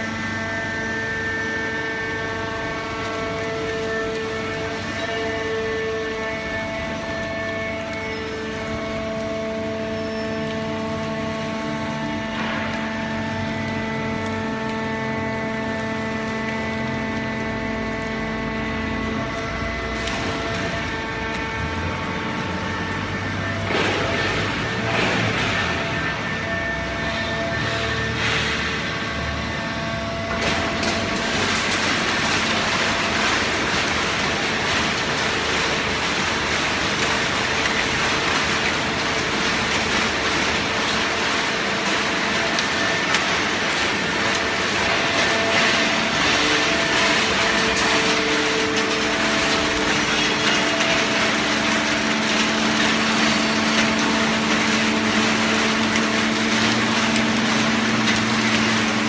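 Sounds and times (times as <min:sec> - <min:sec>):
hydraulic pump motor hum: 0:00.0 - 0:59.0.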